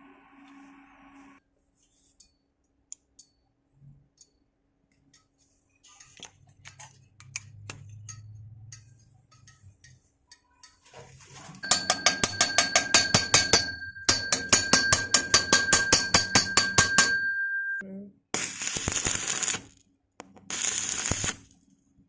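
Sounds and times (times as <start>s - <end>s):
hammer striking ringing metal pipe: 11.6s - 17.8s.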